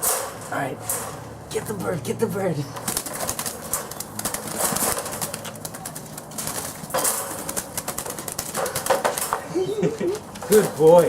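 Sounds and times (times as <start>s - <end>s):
pigeon wings flapping: 2.8s - 11.0s.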